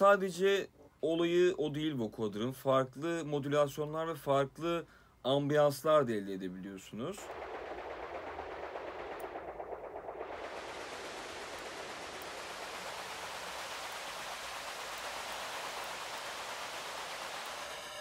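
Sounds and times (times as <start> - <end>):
airy vocoder noise texture: 7.0 - 18.0.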